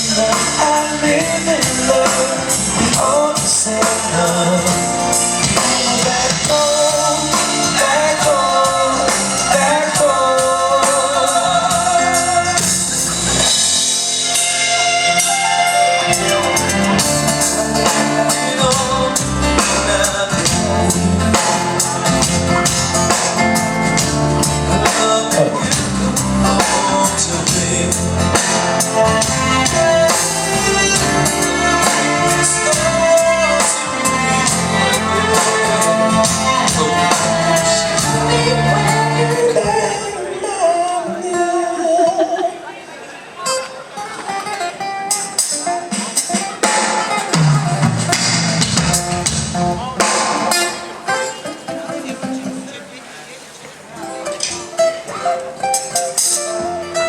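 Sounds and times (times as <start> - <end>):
person singing: 0.0 - 42.8
live band music: 0.0 - 57.0.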